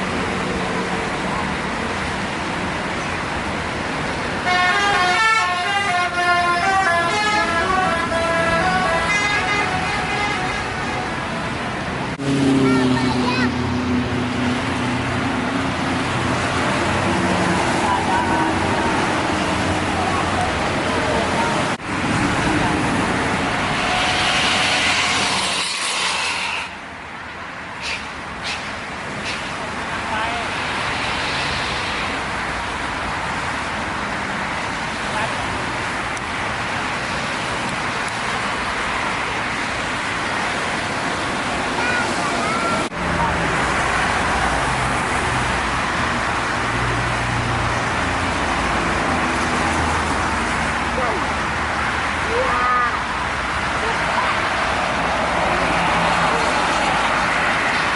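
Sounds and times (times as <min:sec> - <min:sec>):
road traffic passing: 0:00.0 - 0:57.9
vehicle passing close by: 0:10.3 - 0:26.8, 0:53.1 - 0:57.9.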